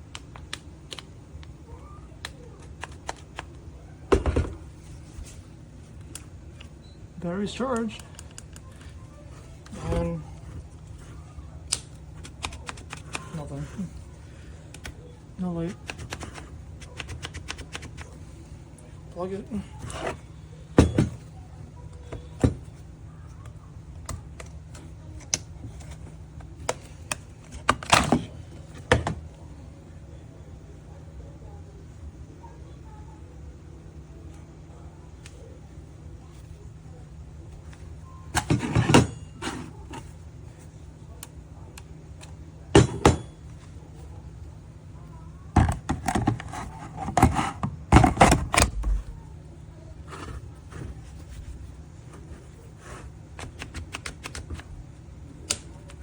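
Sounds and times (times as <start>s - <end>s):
steady low hum: 0.0s - 56.0s
plastic clicks and handling: 0.1s - 1.6s, 7.7s - 8.9s.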